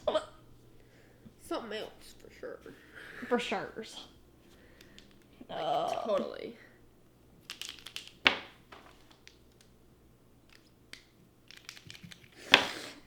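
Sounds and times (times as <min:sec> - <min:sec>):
faint clicking and rustling: 0:04.0 - 0:13.0.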